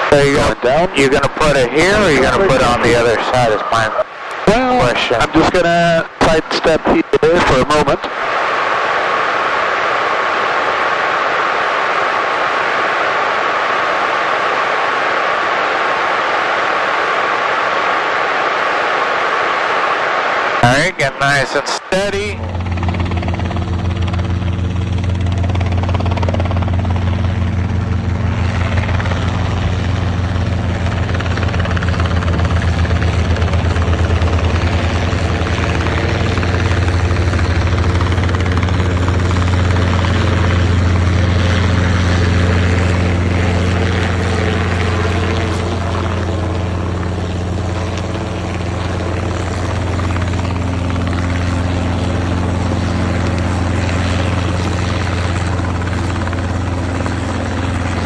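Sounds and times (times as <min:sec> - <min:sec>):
helicopter hovering: 0:00.0 - 0:58.0.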